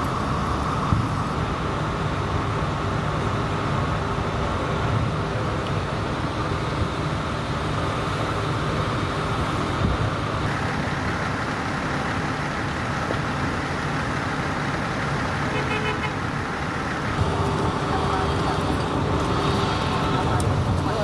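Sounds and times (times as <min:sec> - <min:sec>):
vehicle engines idling: 0:00.0 - 0:21.0.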